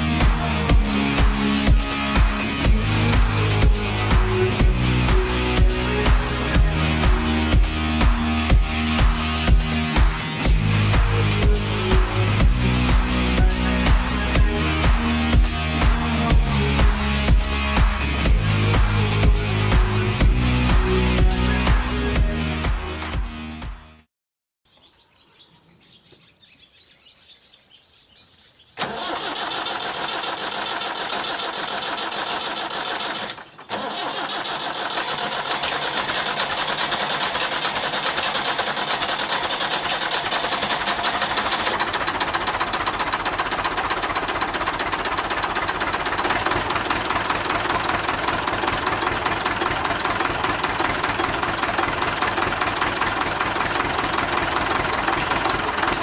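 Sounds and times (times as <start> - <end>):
tractor diesel engine running: 0.0 - 24.0, 28.8 - 56.0.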